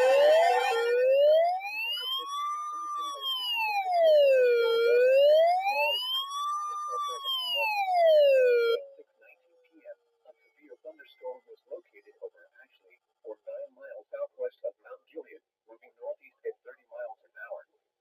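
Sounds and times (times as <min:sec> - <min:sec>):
steady electronic tones: 0:00.0 - 0:03.0
electronic siren slow wail: 0:00.0 - 0:08.8
siren rising yelp: 0:00.0 - 0:08.8.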